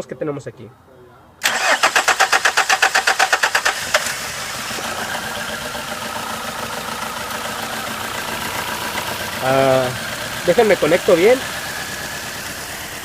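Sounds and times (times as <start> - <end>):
starter cranking engine: 1.4 - 7.6
misfiring engine idling: 1.4 - 13.0.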